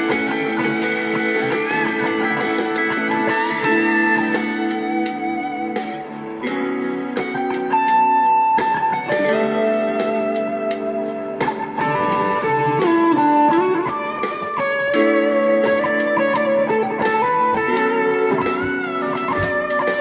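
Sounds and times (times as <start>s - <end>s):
overdriven electric guitar: 0.0s - 20.0s.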